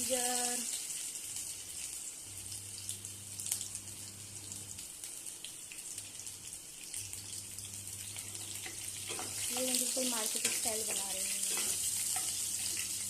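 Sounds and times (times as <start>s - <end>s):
food sizzling in a pan: 0.0s - 13.0s.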